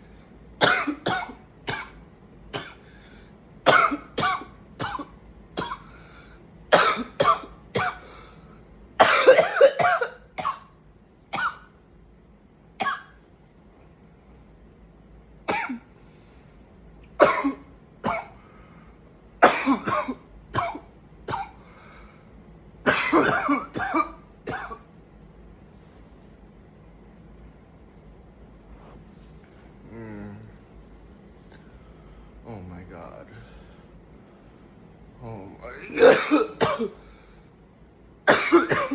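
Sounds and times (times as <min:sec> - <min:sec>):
man coughing: 0:00.6 - 0:02.9, 0:03.7 - 0:05.9, 0:06.7 - 0:08.2, 0:09.0 - 0:10.7, 0:15.5 - 0:15.9, 0:17.2 - 0:18.4, 0:19.4 - 0:21.6, 0:22.9 - 0:24.8, 0:35.7 - 0:37.1, 0:38.3 - 0:38.9.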